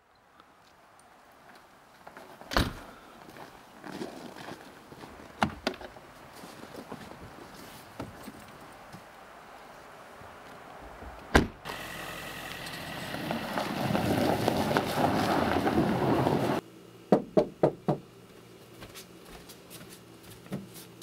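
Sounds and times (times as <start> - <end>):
thump: 11.3 - 11.6
vehicle engine: 11.6 - 16.6
knocks on a door: 17.1 - 18.0.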